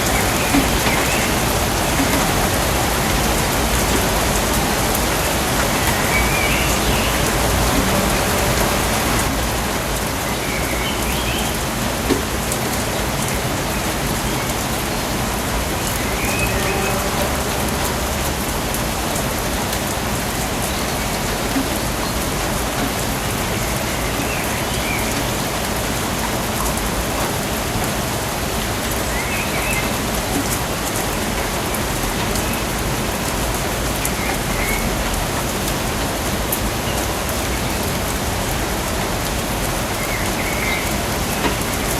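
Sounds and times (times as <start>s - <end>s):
rain falling on foliage: 0.0s - 41.9s.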